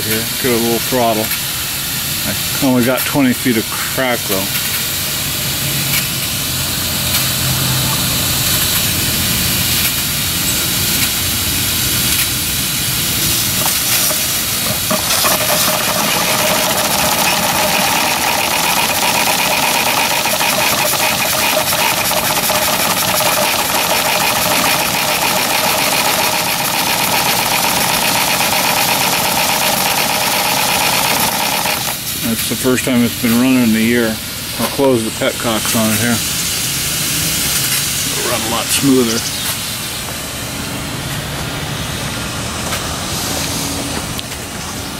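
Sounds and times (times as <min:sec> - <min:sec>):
steady hissing tone: 0:00.0 - 0:07.6, 0:08.3 - 0:41.0
steam locomotive chuffing: 0:08.2 - 0:39.2.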